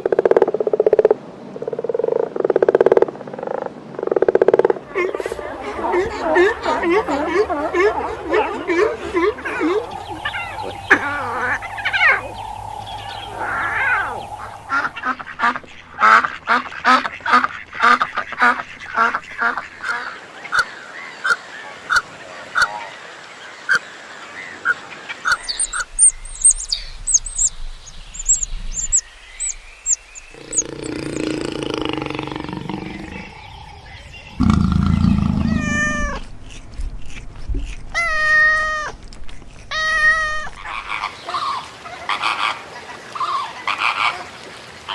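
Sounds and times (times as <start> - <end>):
low drawn-out animal calls: 4.8 - 19.6, 30.3 - 41.5
high chirps: 9.4 - 15.4, 28.1 - 36.2
duck quacks: 14.7 - 20.1.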